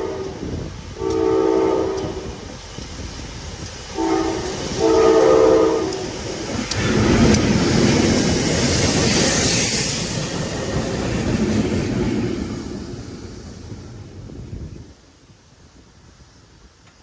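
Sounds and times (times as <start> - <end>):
locomotive horn blasts: 0.0 - 2.4, 3.9 - 6.1
train passing with loud rumble: 0.0 - 16.8
wheels clicking over rail joints: 1.9 - 12.5.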